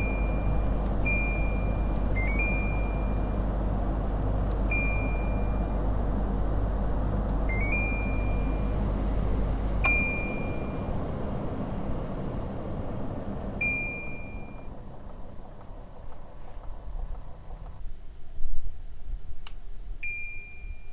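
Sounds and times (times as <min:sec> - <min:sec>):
air conditioner running: 0:00.0 - 0:20.9
short beeps: 0:04.7 - 0:05.6, 0:13.6 - 0:14.6, 0:20.0 - 0:20.9.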